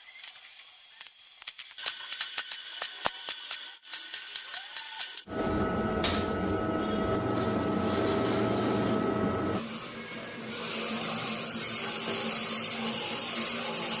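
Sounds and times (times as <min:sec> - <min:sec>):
small electric motor whirring: 0:03.4 - 0:14.0.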